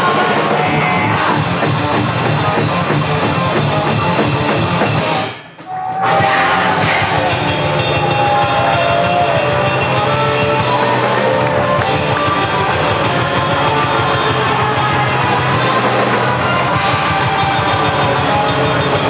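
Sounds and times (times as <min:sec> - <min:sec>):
rock band playing loudly: 0:00.0 - 0:19.0
sliding pitched guitar lines: 0:00.0 - 0:19.0.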